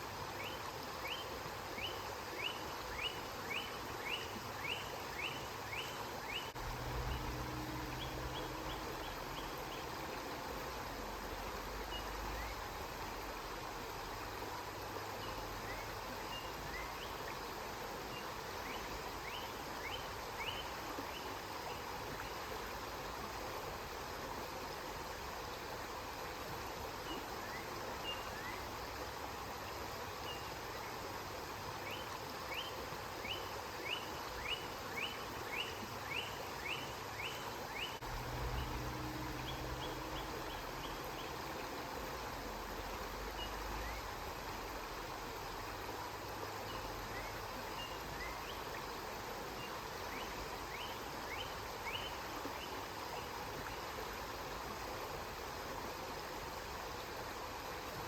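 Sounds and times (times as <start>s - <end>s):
river water flowing: 0.0s - 58.0s
low rumble: 6.6s - 9.3s, 38.0s - 40.8s.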